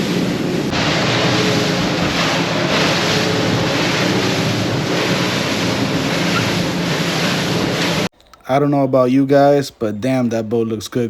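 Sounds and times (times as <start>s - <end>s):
outboard engines droning: 0.0s - 8.1s
water rushing along hull: 0.0s - 8.1s
wind rushing over microphone: 0.0s - 8.1s.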